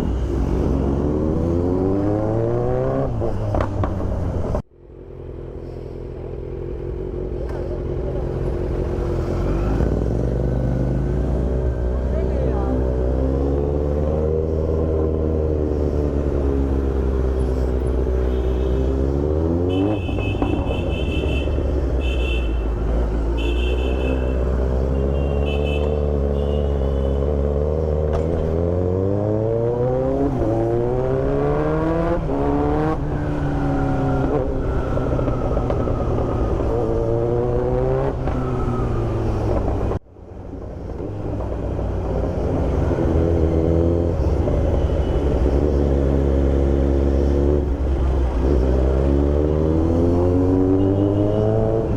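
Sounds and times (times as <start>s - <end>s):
motorcycle engine revving: 42.6s - 51.9s.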